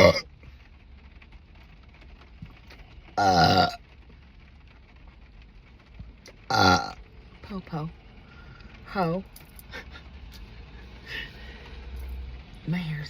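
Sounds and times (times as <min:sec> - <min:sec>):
deep burp: 0:00.0 - 0:00.3, 0:03.2 - 0:03.8, 0:06.5 - 0:07.0.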